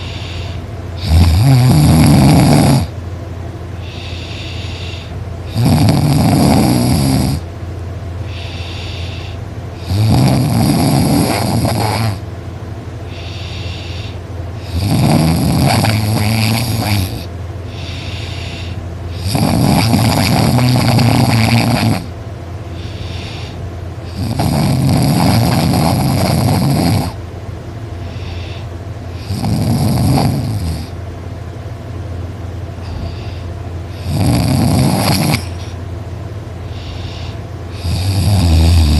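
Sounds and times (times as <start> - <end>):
quiet breaths: 0.0 - 1.0, 3.8 - 5.6, 8.2 - 12.2, 13.0 - 22.1, 22.7 - 23.7, 27.9 - 29.3, 32.8 - 34.0, 36.6 - 38.1
person snoring loudly: 0.0 - 2.9, 3.8 - 7.5, 8.3 - 12.2, 13.1 - 22.1, 22.8 - 27.2, 28.1 - 31.0, 32.8 - 35.8, 36.7 - 38.9.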